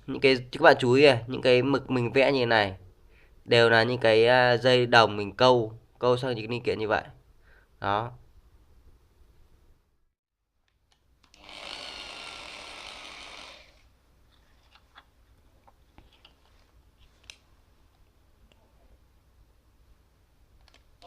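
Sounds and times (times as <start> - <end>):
small electric drill: 11.2 - 13.9.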